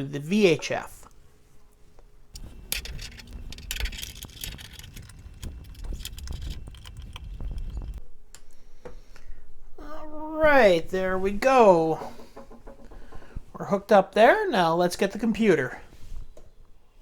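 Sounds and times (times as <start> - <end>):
small metal parts rattling: 2.4 - 8.0.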